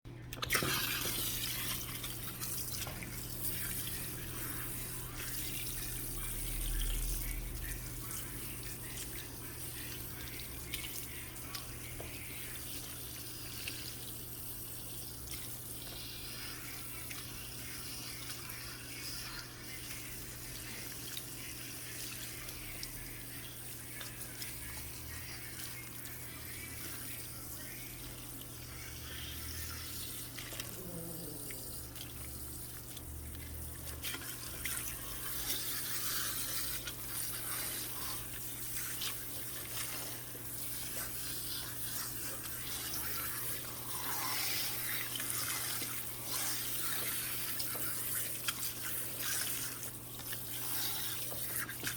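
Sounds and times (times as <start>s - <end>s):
water running from sprayer: 0.4s - 51.9s.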